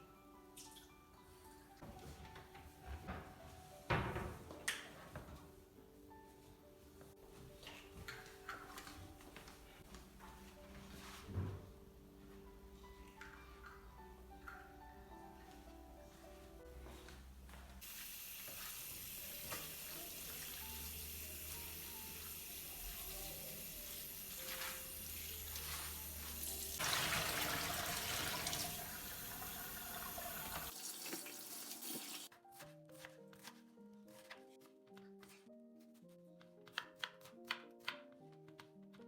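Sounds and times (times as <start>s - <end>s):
soft background music: 0.0s - 39.0s
tap water running into sink: 17.8s - 32.3s.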